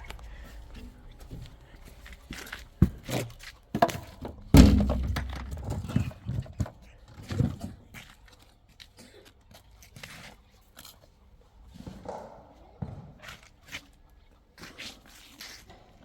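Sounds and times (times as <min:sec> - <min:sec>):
knocks and thuds: 0:04.3 - 0:06.2
heavy thud with low rumble: 0:04.5 - 0:05.7.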